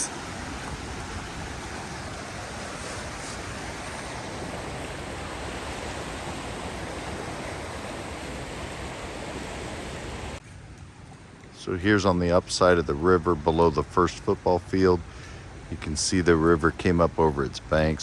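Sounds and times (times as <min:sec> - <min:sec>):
river rushing through rapids: 0:00.0 - 0:10.4.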